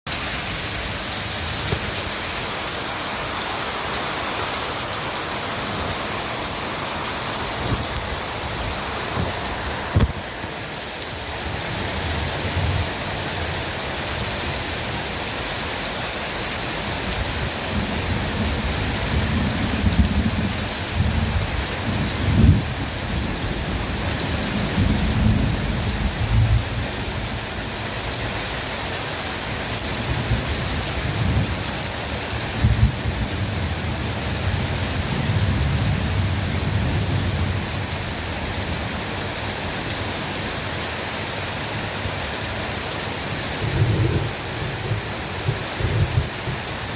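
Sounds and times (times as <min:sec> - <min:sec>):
steady rain hissing: 0:00.1 - 0:46.9
rolling thunder rumbles: 0:17.2 - 0:26.8, 0:32.5 - 0:37.8, 0:43.6 - 0:46.9.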